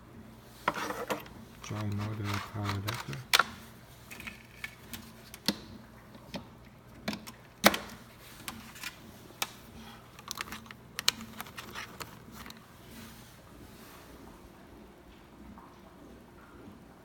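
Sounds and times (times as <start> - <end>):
plastic clicks and knocks: 0.7 - 9.6, 10.2 - 12.6.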